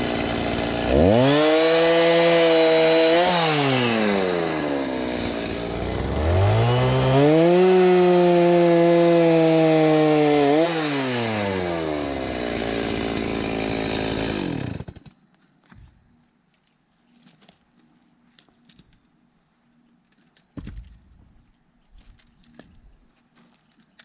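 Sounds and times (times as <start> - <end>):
chainsaw revving and cutting log: 0.0 - 15.1.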